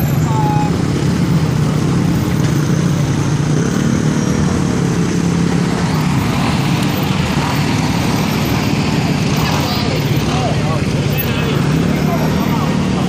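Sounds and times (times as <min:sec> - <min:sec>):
vehicle engine rumbling: 0:00.0 - 0:13.0.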